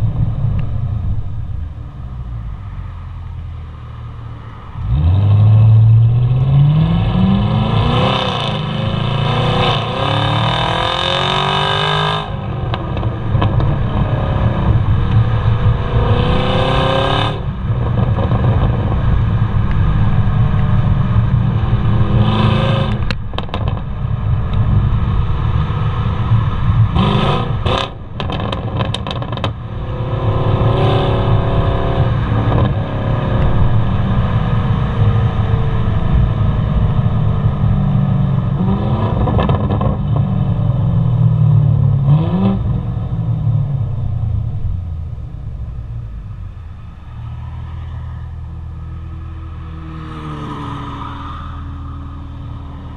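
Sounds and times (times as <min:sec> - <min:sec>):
car engine revving: 0:00.0 - 0:52.9
exhaust pops and crackles: 0:12.7 - 0:13.8, 0:22.9 - 0:24.7, 0:27.6 - 0:29.6, 0:39.0 - 0:40.4.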